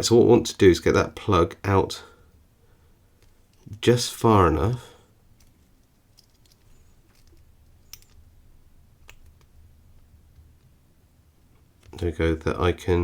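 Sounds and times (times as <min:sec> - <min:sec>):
faint metallic lock clicks: 0:05.3 - 0:08.4, 0:09.0 - 0:10.8.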